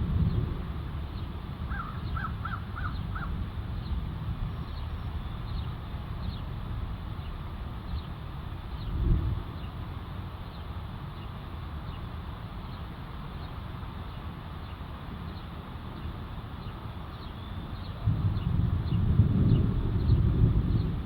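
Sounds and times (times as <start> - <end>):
thunder rumble: 0.0 - 10.4, 18.0 - 21.0
outdoor background noise: 0.0 - 21.0
bird chirps: 1.2 - 6.5, 16.6 - 21.0.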